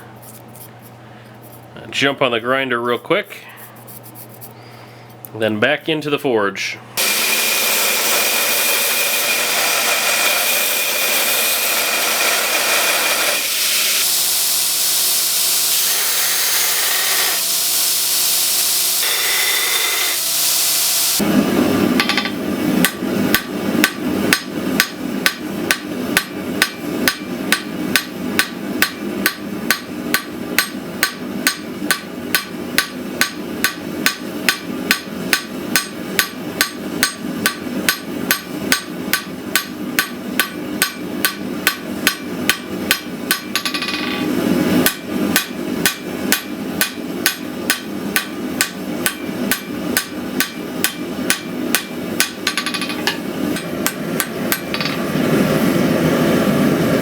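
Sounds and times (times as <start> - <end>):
grinder on steel: 7.0 - 21.2
hammer ringing on anvil: 22.0 - 55.0.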